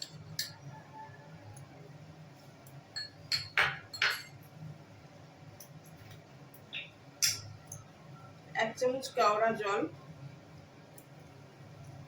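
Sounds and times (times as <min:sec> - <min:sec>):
spoon clinking against dish: 0:00.0 - 0:00.7, 0:03.0 - 0:04.4, 0:07.2 - 0:07.8.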